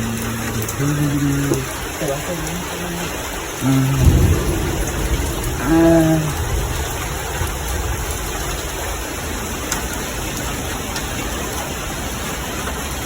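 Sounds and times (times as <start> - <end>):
heavy rain falling: 0.0 - 13.0.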